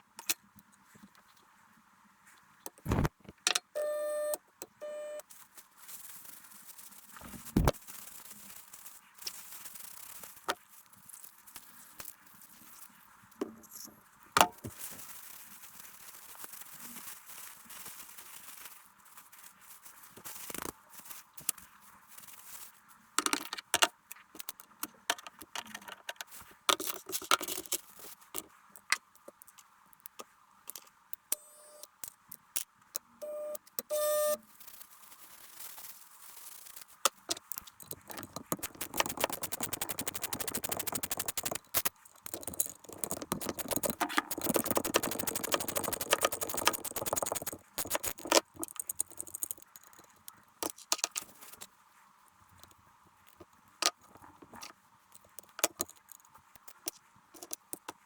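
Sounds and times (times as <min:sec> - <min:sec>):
metal parts and tools clinking: 0:37.3 - 0:51.2
rapid clicking: 0:37.6 - 0:50.4.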